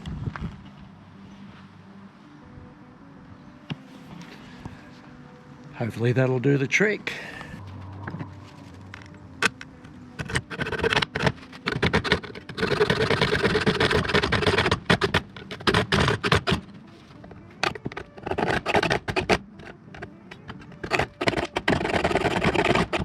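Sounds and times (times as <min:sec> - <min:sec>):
hacksaw cutting metal plate: 0:09.0 - 0:16.7, 0:17.6 - 0:23.0.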